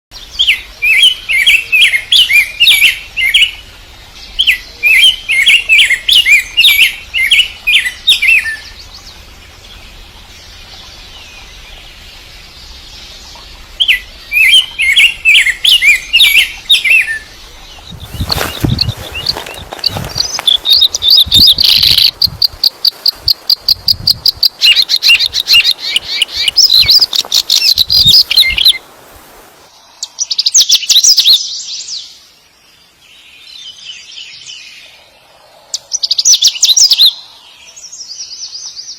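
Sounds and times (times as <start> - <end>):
bird chirping song: 0.1 - 28.8, 29.7 - 38.9
rustling thump: 18.0 - 20.7.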